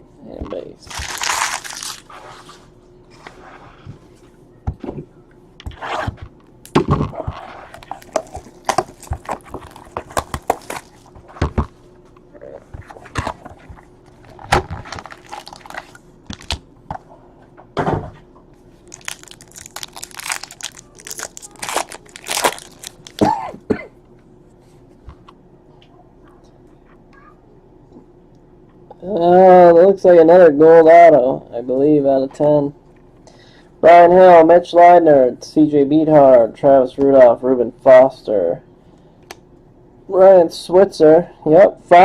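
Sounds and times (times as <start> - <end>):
wrappers crinkling and tearing: 0.8 - 2.1, 7.7 - 11.2, 14.2 - 16.6, 18.8 - 23.3.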